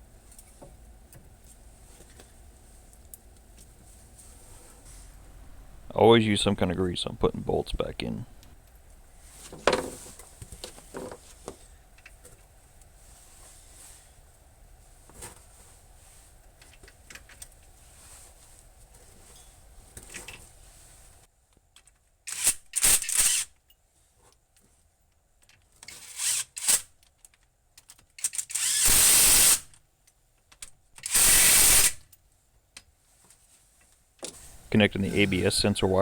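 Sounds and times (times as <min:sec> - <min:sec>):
faint clicks and handling noise: 0:00.2 - 0:05.1, 0:08.4 - 0:13.6, 0:14.2 - 0:22.2, 0:23.6 - 0:25.9, 0:27.0 - 0:28.4, 0:29.7 - 0:31.0, 0:32.1 - 0:35.6
power tool driving bolts: 0:22.3 - 0:23.5, 0:25.9 - 0:26.9, 0:28.2 - 0:29.7, 0:31.0 - 0:32.1.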